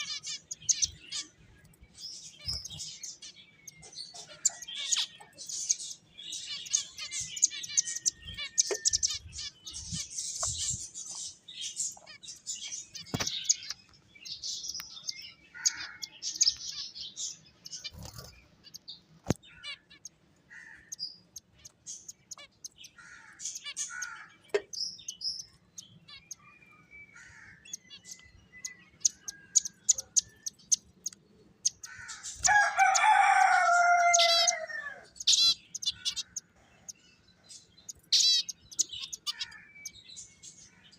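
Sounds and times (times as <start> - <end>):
finches chirping: 0.0 - 40.9
sharp ticks and clicks: 14.6 - 15.2.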